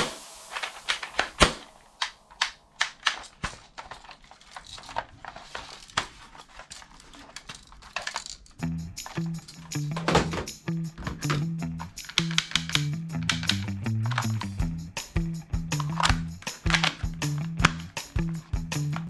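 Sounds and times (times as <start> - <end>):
plastic toy guns clicking: 0.6 - 5.2, 5.9 - 10.3, 12.0 - 14.5, 15.8 - 17.9
plastic snap: 12.0 - 14.6, 15.8 - 17.9.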